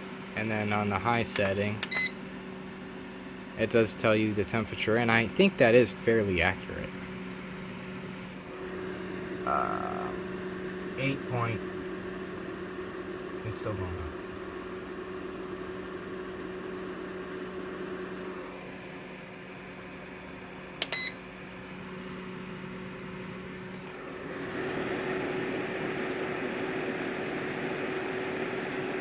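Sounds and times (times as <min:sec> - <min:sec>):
space heater fan humming: 0:00.0 - 0:29.0
short electronic beep: 0:20.9 - 0:21.2
rush of air from fan: 0:23.4 - 0:26.0.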